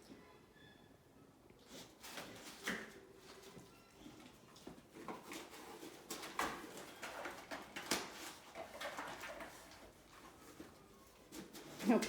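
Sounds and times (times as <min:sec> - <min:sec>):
dog tearing cardboard box: 0:04.9 - 0:10.3.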